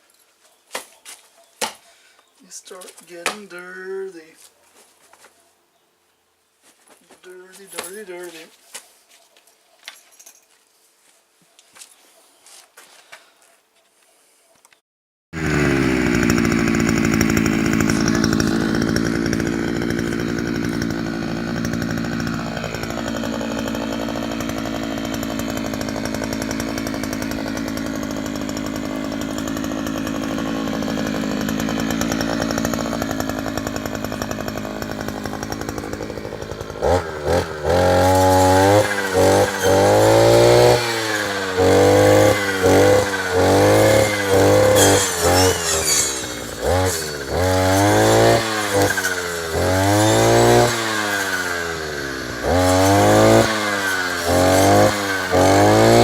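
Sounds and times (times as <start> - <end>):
brush cutter engine revving: 15.4 - 56.0.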